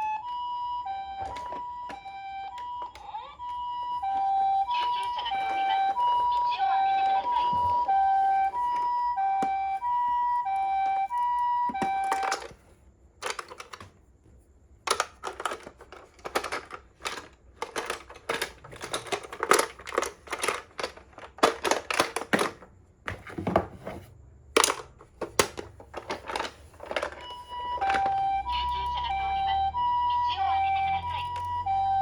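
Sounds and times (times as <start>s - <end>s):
electronic two-tone toy siren: 0.0s - 12.6s, 26.4s - 32.0s
plastic toy car clicking and rattling: 1.1s - 14.0s, 14.8s - 22.7s, 24.5s - 29.1s.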